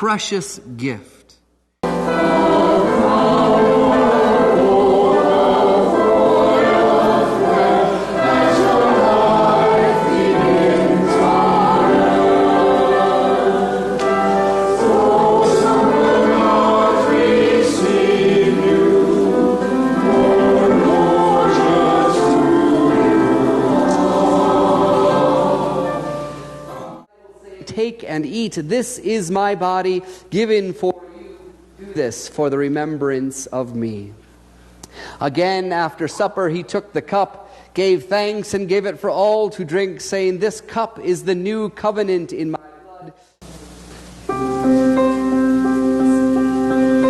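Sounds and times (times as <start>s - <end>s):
choir singing a hymn: 1.8s - 27.1s, 44.3s - 47.0s.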